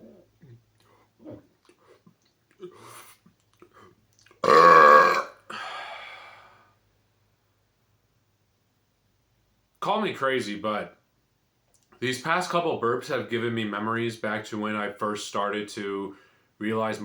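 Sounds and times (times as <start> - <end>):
man burping loudly: 4.4 - 5.5.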